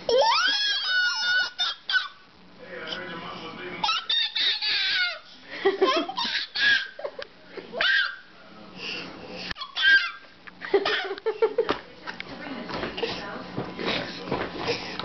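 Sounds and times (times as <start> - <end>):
baby laughing: 0.1 - 2.2, 3.8 - 7.2, 7.8 - 8.2, 9.6 - 11.2
baby squealing and shrieking: 0.1 - 2.2, 3.8 - 5.3, 6.2 - 7.0, 7.8 - 8.3, 9.6 - 10.2.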